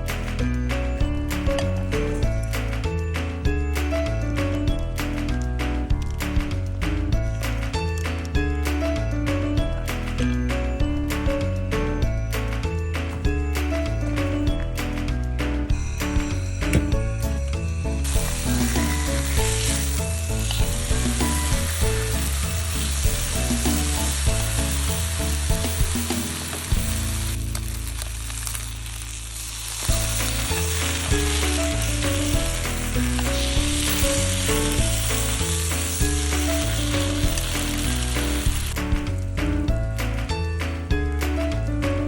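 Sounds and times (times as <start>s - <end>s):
background music with bass: 0.0s - 42.0s
food sizzling in a pan: 18.0s - 38.8s.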